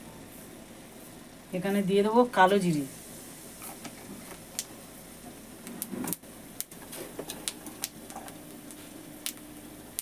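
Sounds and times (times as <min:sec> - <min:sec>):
faint sizzle: 0:00.0 - 0:10.0
seeds popping in hot oil: 0:05.6 - 0:10.0.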